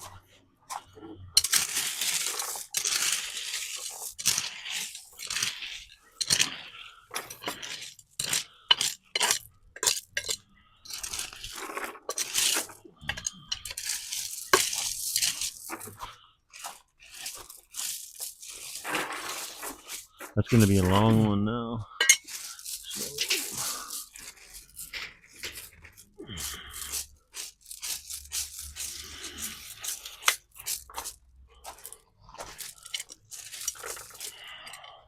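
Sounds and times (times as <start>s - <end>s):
scraping and rustling: 0.0s - 21.3s, 21.9s - 35.0s
clinks: 6.2s - 16.1s, 21.8s - 26.0s.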